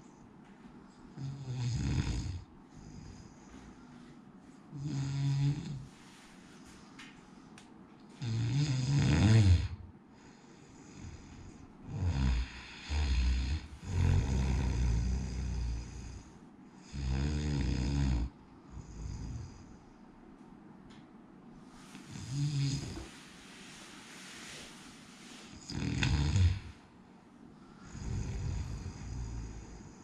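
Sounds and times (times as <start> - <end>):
man snoring: 1.1 - 3.3, 4.7 - 5.9, 8.2 - 9.8, 10.8 - 19.8, 22.1 - 23.1, 25.5 - 26.8, 27.8 - 30.0.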